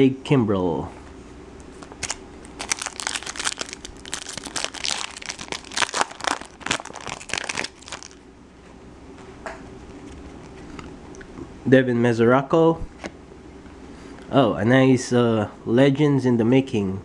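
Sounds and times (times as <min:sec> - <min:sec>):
wrapper crinkling: 0:01.7 - 0:08.2.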